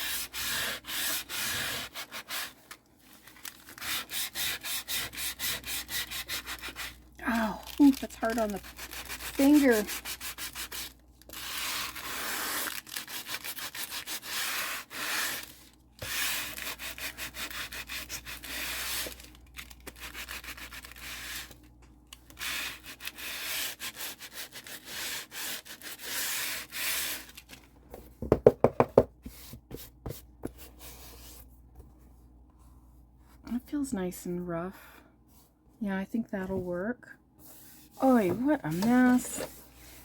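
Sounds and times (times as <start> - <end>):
sandpaper rubbing on book cover: 0.0 - 2.6, 3.7 - 7.0, 8.2 - 19.2, 19.9 - 21.6, 22.4 - 27.4.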